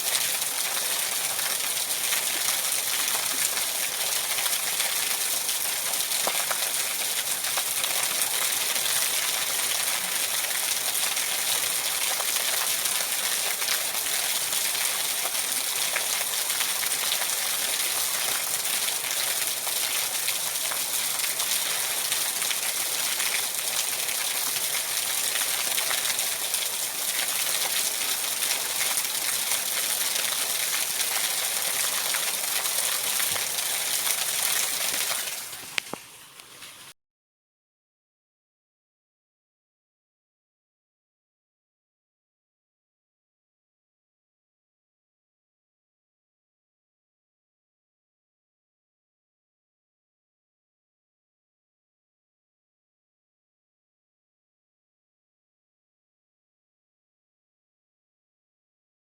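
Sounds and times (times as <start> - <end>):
heavy rain: 0.1 - 36.8.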